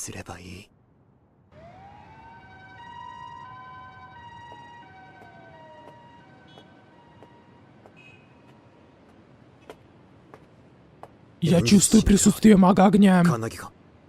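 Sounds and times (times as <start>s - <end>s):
ambulance siren wail: 1.5s - 8.1s
two-note hi-lo siren tone: 1.6s - 8.2s.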